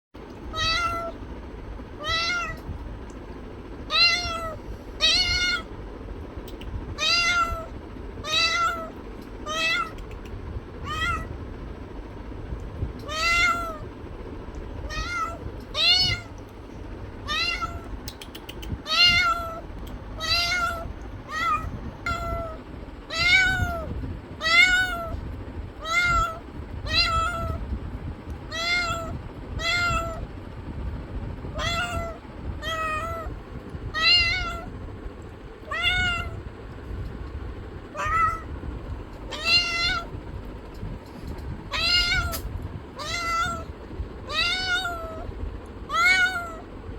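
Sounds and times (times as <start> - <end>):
cat meowing: 0.4 - 1.3, 2.0 - 2.8, 3.8 - 5.8, 6.9 - 10.2, 10.8 - 11.4, 13.0 - 13.9, 14.8 - 16.4, 17.2 - 18.0, 18.6 - 27.6, 28.4 - 30.3, 31.5 - 34.7, 35.6 - 36.4, 37.9 - 38.6, 39.3 - 40.2, 41.7 - 46.7.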